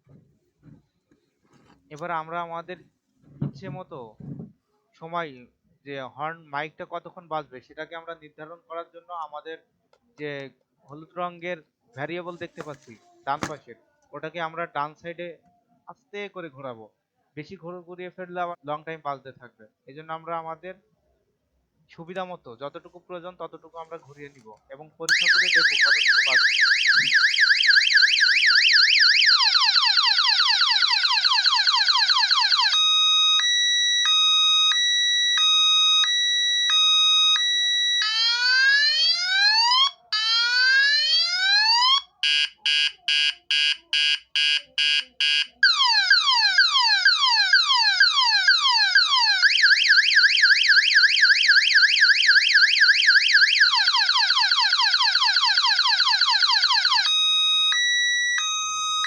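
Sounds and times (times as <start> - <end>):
electronic multi-tone alarm siren: 25.1 - 59.0.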